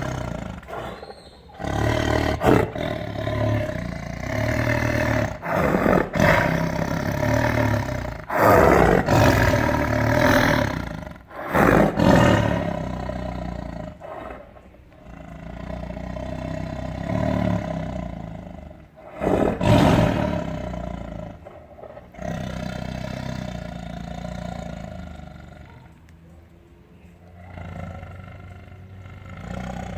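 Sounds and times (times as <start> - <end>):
tiger roaring: 0.0 - 26.0, 27.2 - 29.9
tiger growling: 0.0 - 26.1, 27.0 - 29.9.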